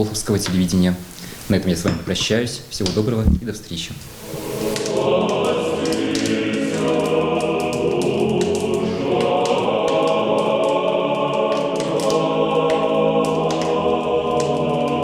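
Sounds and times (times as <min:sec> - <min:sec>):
choir singing sustained chords: 0:04.2 - 0:15.0.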